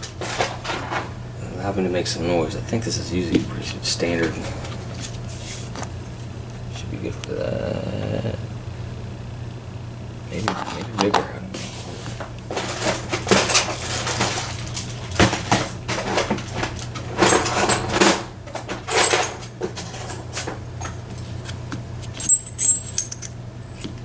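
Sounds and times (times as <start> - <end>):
metal tools rattling and clinking: 0.0 - 5.1, 10.4 - 23.4
bright metallic rings: 22.2 - 23.4.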